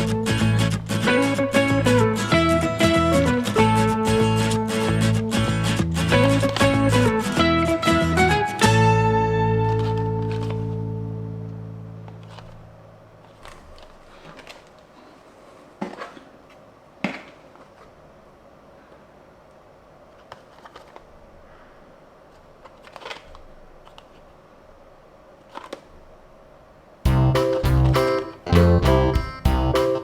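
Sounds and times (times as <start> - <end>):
guitar music: 0.0 - 12.6, 27.1 - 30.0
packaging rustling: 9.6 - 10.8, 12.1 - 12.6, 13.2 - 18.0, 20.1 - 21.2, 22.3 - 24.4, 25.4 - 25.9.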